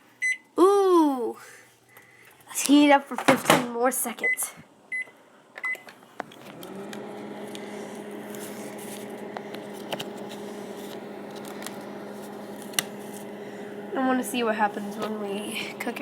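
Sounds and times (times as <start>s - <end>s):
microwave oven humming: 4.2s - 16.0s
microwave click: 5.6s - 8.4s, 10.9s - 13.4s.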